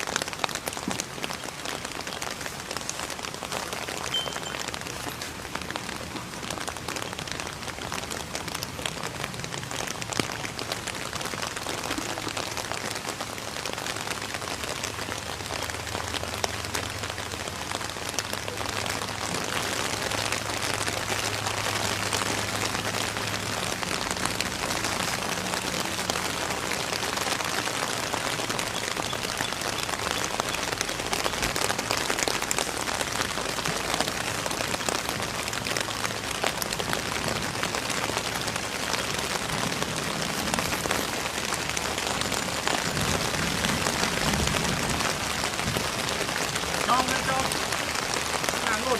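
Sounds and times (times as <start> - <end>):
steady rain falling: 0.0 - 48.9.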